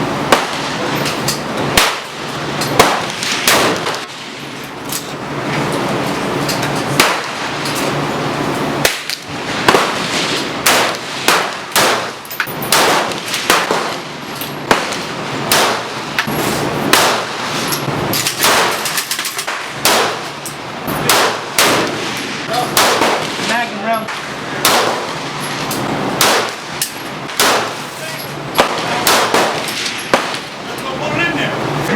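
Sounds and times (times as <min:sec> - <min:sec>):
gunshots: 0:00.3 - 0:01.0, 0:01.7 - 0:04.4, 0:06.9 - 0:07.6, 0:08.8 - 0:16.2, 0:16.8 - 0:20.4, 0:21.0 - 0:30.7.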